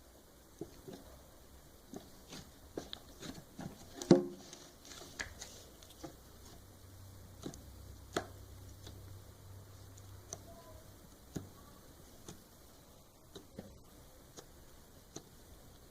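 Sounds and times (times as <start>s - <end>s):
slime squishing with small pops: 0.4s - 15.9s.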